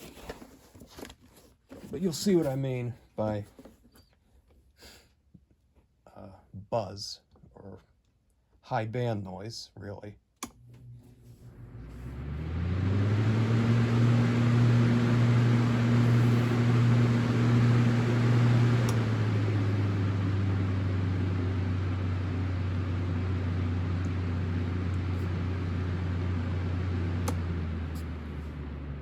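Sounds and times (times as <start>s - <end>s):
electric fan motor hum: 10.4s - 29.0s
fan blade buzz: 10.4s - 29.0s.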